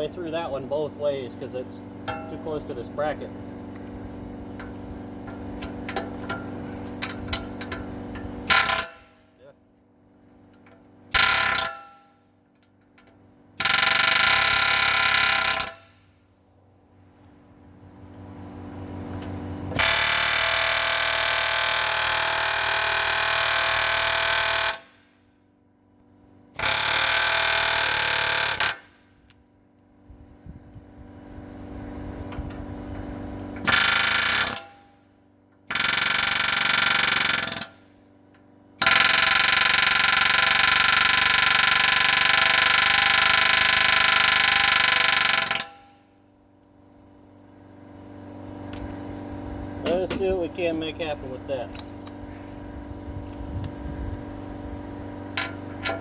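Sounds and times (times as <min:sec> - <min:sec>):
pneumatic air hammer on steel: 0:05.7 - 0:09.2, 0:11.1 - 0:12.2, 0:13.6 - 0:16.0, 0:19.7 - 0:25.2, 0:26.6 - 0:29.2, 0:33.6 - 0:35.0, 0:35.7 - 0:37.9.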